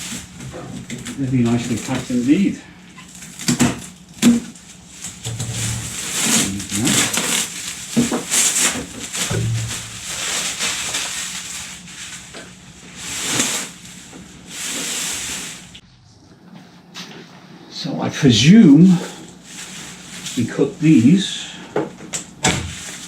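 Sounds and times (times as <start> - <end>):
foam and plastic rustling: 0.0 - 15.8, 18.2 - 23.0.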